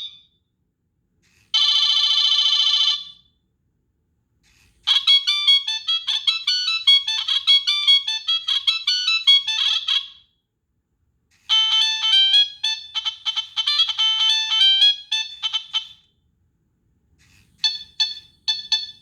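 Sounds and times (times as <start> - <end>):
electronic ringtone melody: 4.9 - 10.2, 11.5 - 16.0, 17.6 - 19.0.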